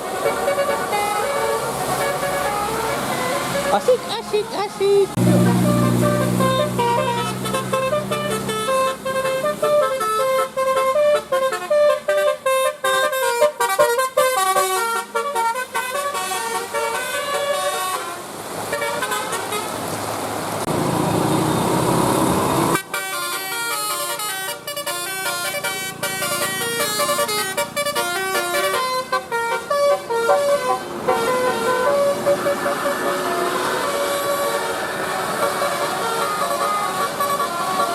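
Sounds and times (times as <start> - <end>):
musical air horn melody: 5.2 - 19.7, 22.7 - 37.9.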